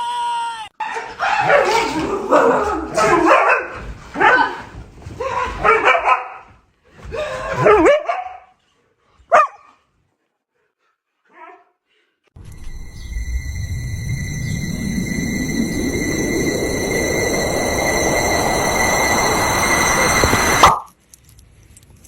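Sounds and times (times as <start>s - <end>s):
dog barking and vocalising: 0.8s - 4.6s, 9.3s - 9.7s.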